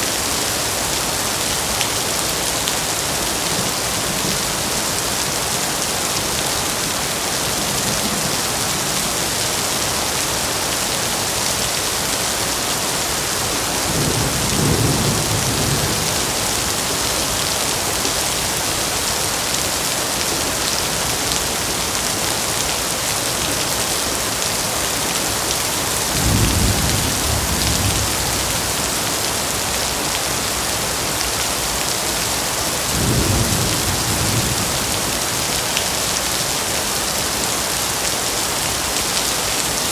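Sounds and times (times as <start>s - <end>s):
heavy rain falling: 0.0s - 39.9s
thunder rumbling: 26.1s - 29.7s.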